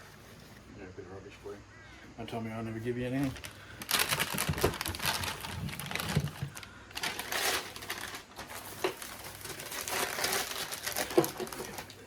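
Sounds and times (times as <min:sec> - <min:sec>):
packaging rustling and crinkling: 0:03.0 - 0:12.0.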